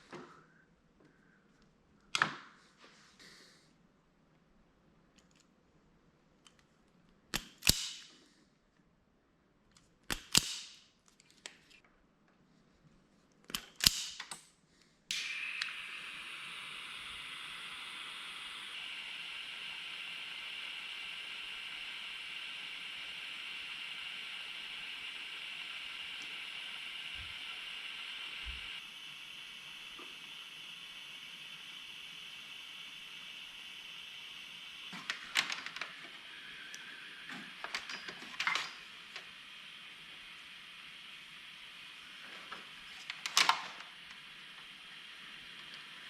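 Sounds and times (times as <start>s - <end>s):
hand tool snapping clicks: 7.3s - 8.2s, 9.7s - 11.5s, 13.5s - 14.4s
heat tool hissing: 15.1s - 46.0s.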